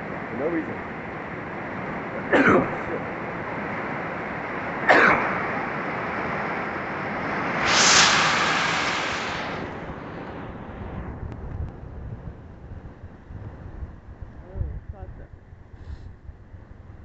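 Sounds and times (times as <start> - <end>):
person coughing: 2.3 - 2.7, 4.9 - 5.2
wind hiss: 2.9 - 12.8.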